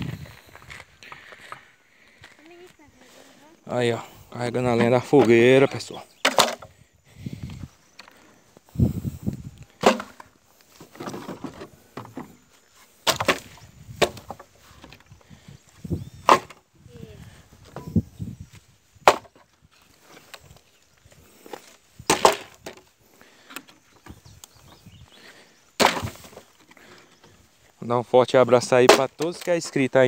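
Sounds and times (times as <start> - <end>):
logs clacking onto pile: 6.2 - 6.8, 9.8 - 12.4, 13.0 - 15.3, 19.0 - 19.5, 22.0 - 24.2, 25.8 - 27.3, 28.5 - 29.9.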